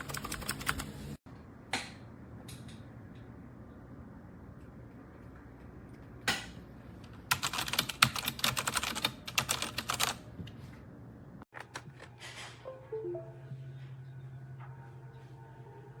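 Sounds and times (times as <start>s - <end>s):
mechanical keyboard typing: 0.0s - 0.9s, 7.3s - 10.2s.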